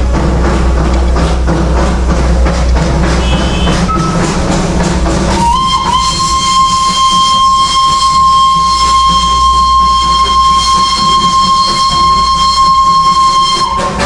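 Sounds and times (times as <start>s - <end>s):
steam locomotive whistle: 3.1s - 4.5s, 5.3s - 14.0s.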